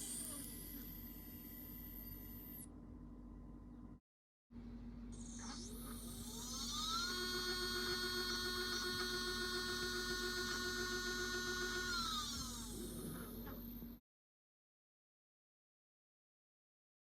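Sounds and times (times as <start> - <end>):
motorized mount whine: 0.0 - 2.7, 5.1 - 14.0.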